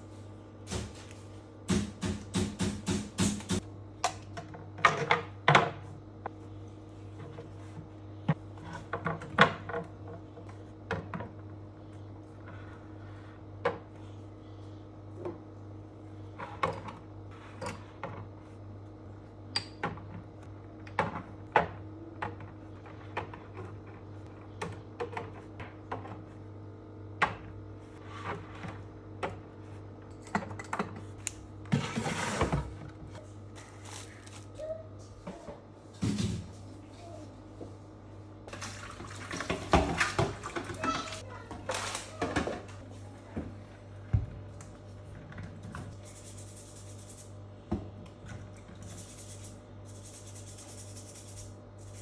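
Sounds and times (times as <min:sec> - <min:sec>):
steady low hum: 0:42.4 - 0:52.0.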